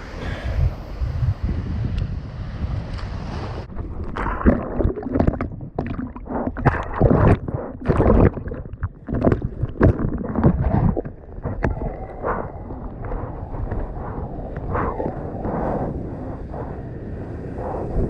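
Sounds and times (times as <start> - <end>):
water sloshing and splashing: 3.0 - 15.6.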